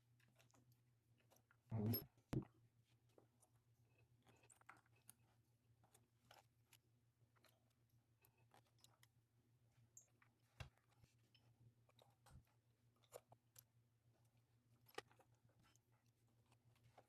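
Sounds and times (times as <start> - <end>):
faint low hum: 1.7 - 2.5.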